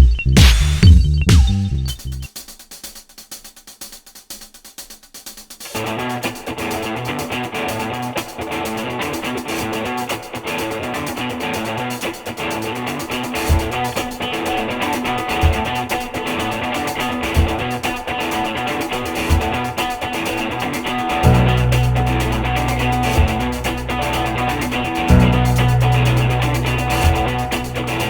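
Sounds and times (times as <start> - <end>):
low beat: 0.0 - 2.3, 13.5 - 28.0
guitar background music: 5.8 - 28.0.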